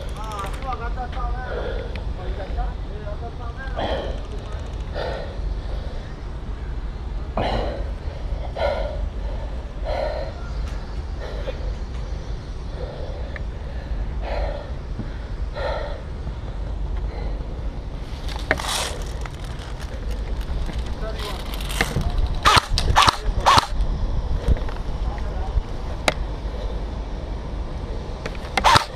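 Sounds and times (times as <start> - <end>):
camera handling rumble: 0.0 - 0.8, 18.0 - 24.9, 28.3 - 28.9
sharp click with short hiss: 22.4 - 23.8.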